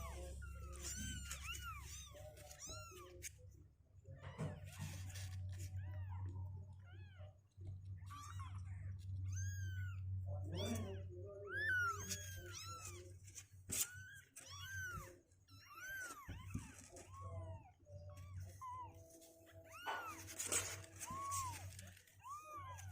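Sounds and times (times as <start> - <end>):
kittens mewing: 0.0 - 3.4, 4.1 - 22.9.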